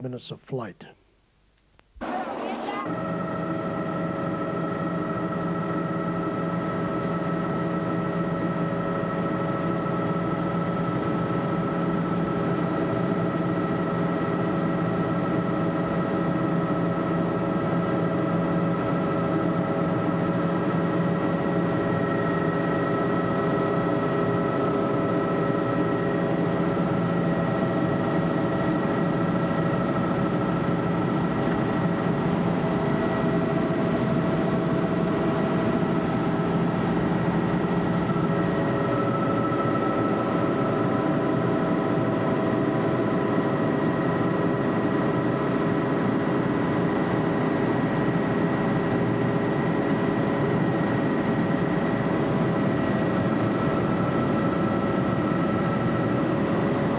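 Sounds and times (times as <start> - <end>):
helicopter engine and rotor drone: 2.0 - 56.9
thin whining tones: 14.1 - 56.9.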